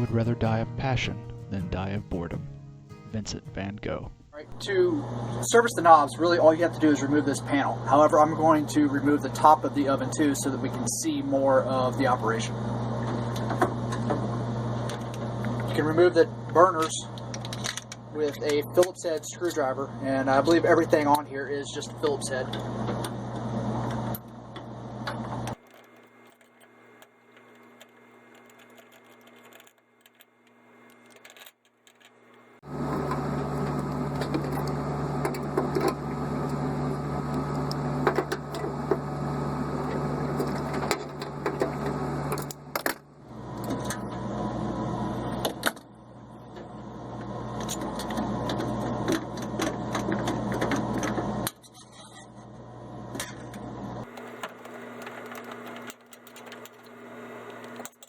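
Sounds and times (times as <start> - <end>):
scattered clicks: 25.4 - 32.4, 54.0 - 58.0.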